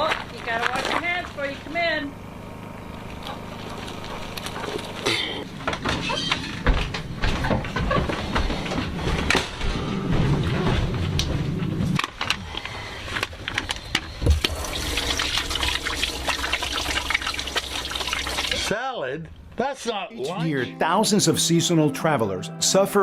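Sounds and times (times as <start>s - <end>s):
tap water running and splashing: 14.2s - 18.7s.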